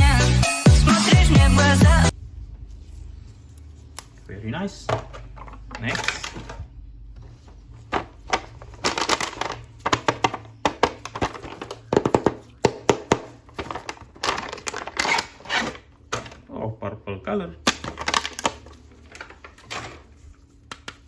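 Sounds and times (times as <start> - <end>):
plastic packaging crinkling: 7.4 - 16.4, 17.7 - 21.0.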